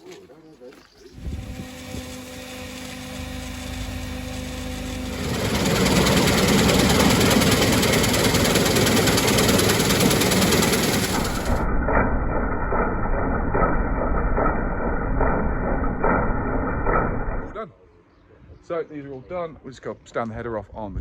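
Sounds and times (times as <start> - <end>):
large diesel engine idling: 1.8 - 17.6.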